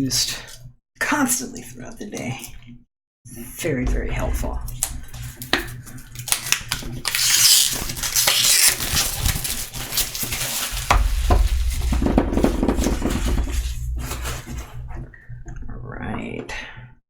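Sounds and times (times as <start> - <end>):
plastic wrap crackling rustle: 6.3 - 14.6.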